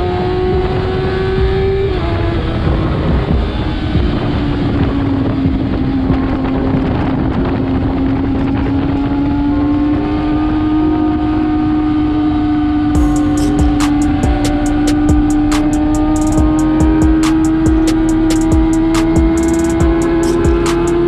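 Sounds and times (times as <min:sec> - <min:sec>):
motorcycle engine high pitch: 0:00.0 - 0:08.1, 0:10.2 - 0:21.0
wind buffeting microphone: 0:00.0 - 0:09.4.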